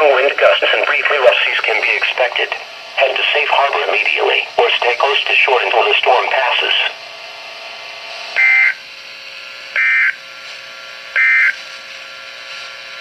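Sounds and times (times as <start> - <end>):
radio hiss: 0.0 - 8.7.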